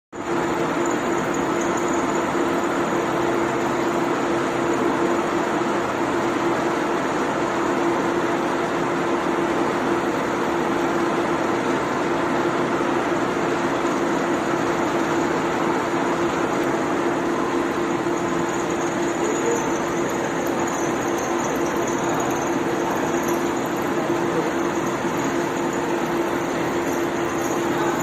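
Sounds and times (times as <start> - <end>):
drill press motor humming: 16.3 - 28.0.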